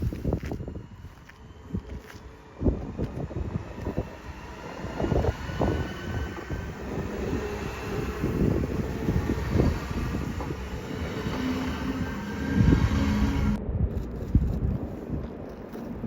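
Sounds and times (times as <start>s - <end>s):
train rumbling: 0.0s - 16.0s.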